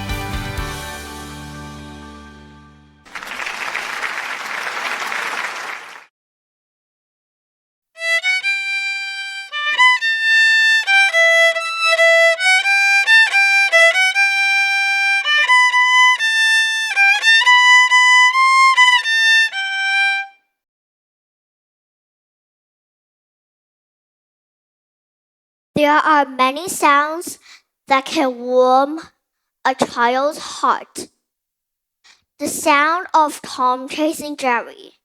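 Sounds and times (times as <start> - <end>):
solo violin melody: 8.0 - 20.4.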